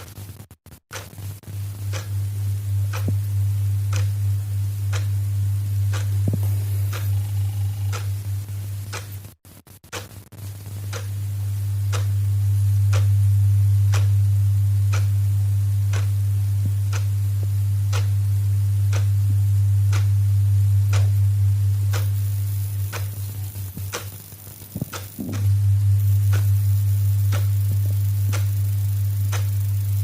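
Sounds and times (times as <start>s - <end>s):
clock ticking: 0.9s - 2.2s, 2.9s - 4.2s, 4.9s - 5.2s, 5.8s - 9.2s, 9.9s - 10.2s, 10.9s - 11.2s, 11.8s - 12.2s, 12.9s - 13.2s, 13.9s - 14.2s, 14.9s - 15.1s, 15.9s - 16.2s, 16.9s - 17.2s, 17.9s - 18.2s, 18.9s - 19.2s, 19.9s - 20.2s, 20.8s - 21.3s, 21.9s - 30.0s
loud steady low hum: 1.1s - 9.4s, 10.4s - 30.0s.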